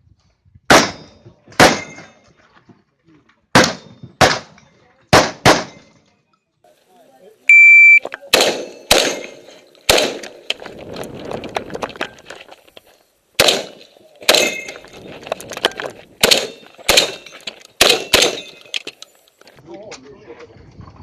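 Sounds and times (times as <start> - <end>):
shotgun shots: 0.7 - 2.1, 3.5 - 5.9, 8.2 - 10.5, 13.4 - 14.8, 16.2 - 18.6.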